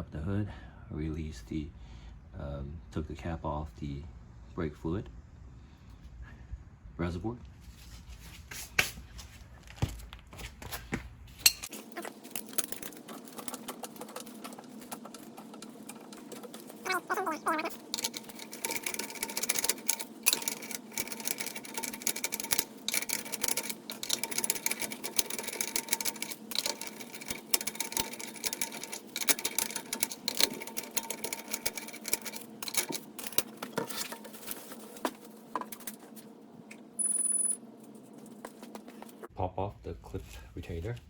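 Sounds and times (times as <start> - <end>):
socket tool clicking and rattling: 11.6 - 36.0.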